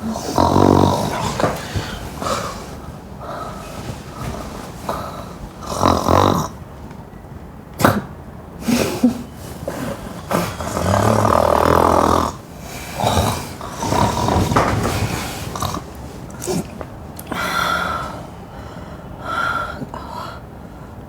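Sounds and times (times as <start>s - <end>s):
person snoring loudly: 0.0s - 2.6s, 4.9s - 6.6s, 9.7s - 16.7s.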